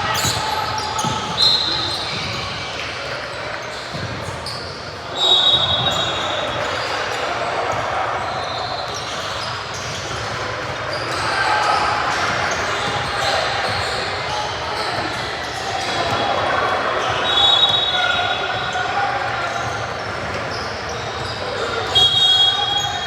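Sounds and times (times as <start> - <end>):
murmur of spectators: 0.0 - 23.0
sneaker squeak: 0.0 - 23.0
basketball bouncing on court: 0.1 - 2.7.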